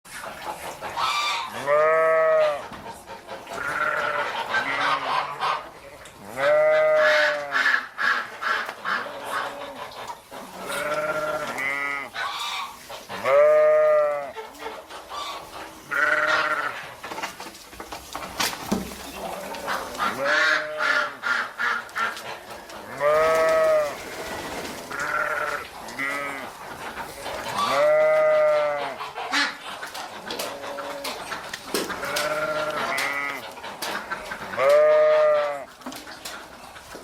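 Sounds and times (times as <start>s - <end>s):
goat bleating: 1.5s - 2.7s, 3.6s - 5.2s, 10.6s - 12.1s, 13.2s - 14.3s, 15.9s - 16.8s, 22.9s - 24.2s, 24.8s - 26.5s, 27.6s - 29.0s, 32.0s - 33.4s, 34.6s - 35.7s.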